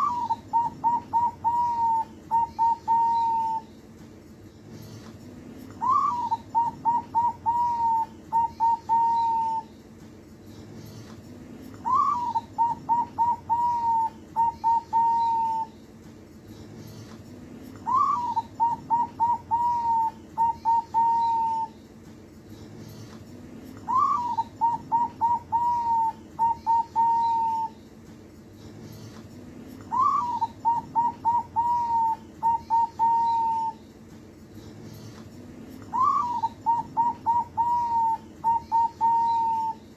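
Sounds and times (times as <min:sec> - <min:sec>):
dove cooing: 0:00.0 - 0:03.7, 0:05.8 - 0:09.7, 0:11.8 - 0:15.7, 0:17.8 - 0:21.8, 0:23.8 - 0:27.8, 0:29.9 - 0:33.8, 0:35.8 - 0:39.8.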